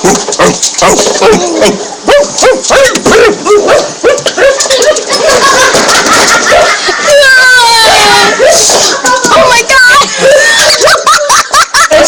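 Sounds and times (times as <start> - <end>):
dog barking and yelping: 0.0 - 5.6.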